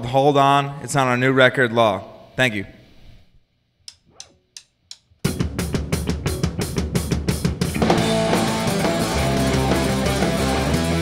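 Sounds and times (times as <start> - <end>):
rock band playing loudly: 5.3 - 11.0.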